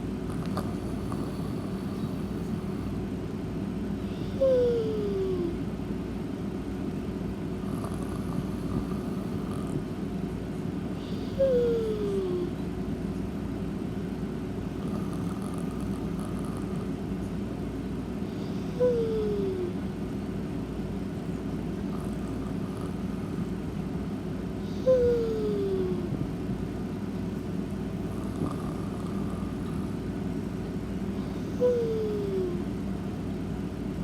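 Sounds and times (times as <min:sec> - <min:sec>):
steady low hum: 0:00.0 - 0:34.0
cat snoring squeak: 0:00.3 - 0:02.9, 0:07.7 - 0:09.7, 0:11.0 - 0:12.5, 0:14.8 - 0:16.9, 0:18.3 - 0:19.7, 0:24.6 - 0:26.0, 0:28.0 - 0:30.0, 0:31.2 - 0:32.6.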